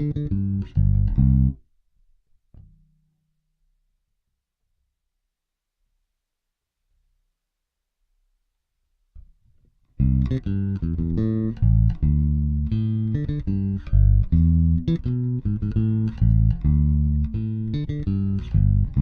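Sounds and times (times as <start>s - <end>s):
plucked electric bass: 0.0s - 1.6s, 10.0s - 19.0s.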